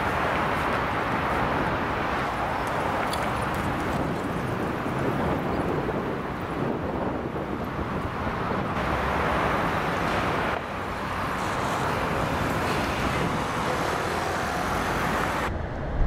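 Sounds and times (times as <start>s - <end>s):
road traffic hum: 0.0s - 16.0s.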